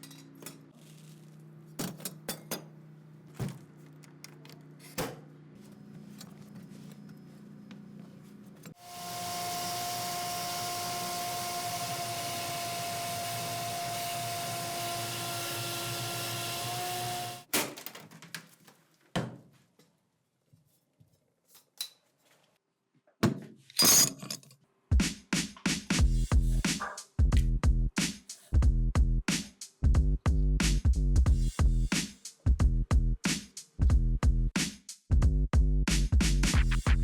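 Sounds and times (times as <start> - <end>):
small motorised tool running: 8.8 - 17.5
music with heavy beat: 25.0 - 37.0.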